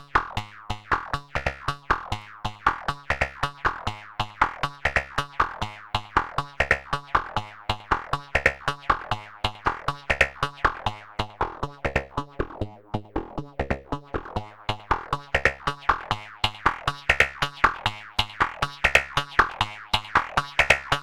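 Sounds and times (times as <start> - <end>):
synthesizer plucked notes: 9.8 - 16.1.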